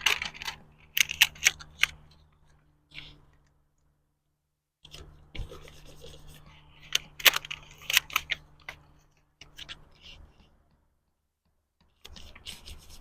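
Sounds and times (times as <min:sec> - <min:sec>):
paper crinkling and rubbing: 0:12.0 - 0:13.0.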